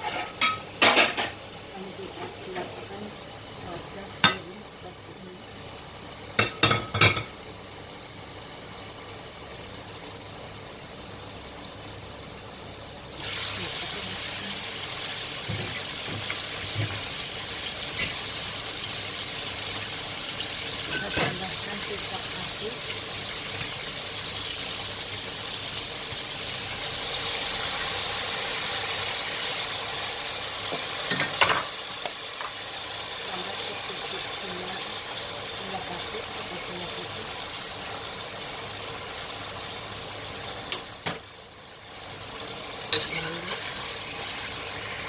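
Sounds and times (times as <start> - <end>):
kitchenware clinking: 0.0 - 1.4, 4.2 - 4.5, 6.4 - 7.4, 20.8 - 21.6, 30.7 - 31.8, 42.9 - 43.7
food sizzling in a pan: 0.0 - 45.0.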